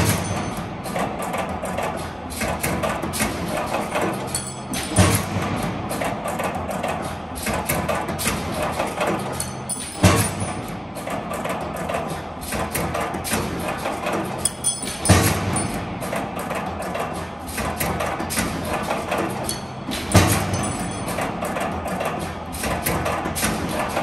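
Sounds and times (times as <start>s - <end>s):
background music with percussive beat: 9.4s - 11.4s, 14.4s - 16.4s.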